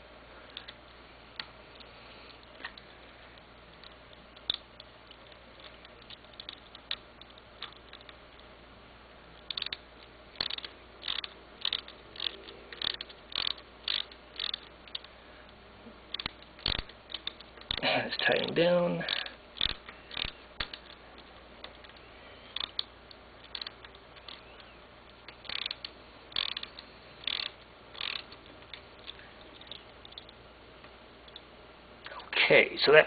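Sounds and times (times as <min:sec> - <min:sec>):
screw tightening clicks: 0:09.4 - 0:15.1, 0:16.1 - 0:17.8, 0:19.1 - 0:30.4.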